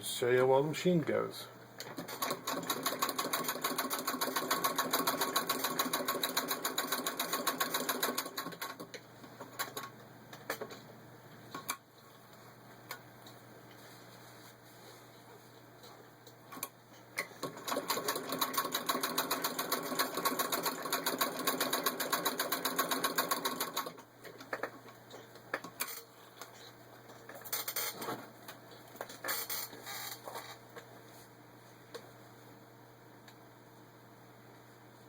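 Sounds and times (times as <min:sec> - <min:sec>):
hand-cranked sewing machine clatter: 0:02.0 - 0:08.9, 0:17.4 - 0:24.8.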